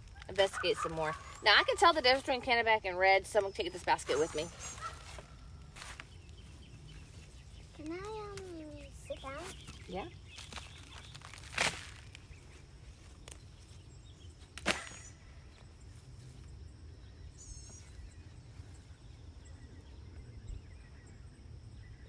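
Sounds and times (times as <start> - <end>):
bird chirp: 3.4 - 11.4, 13.3 - 22.0.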